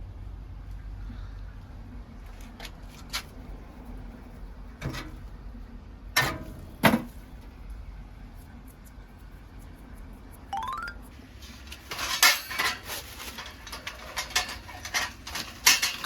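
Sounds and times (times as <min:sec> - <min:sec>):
knocks and clunks of handling: 0:04.8 - 0:05.2.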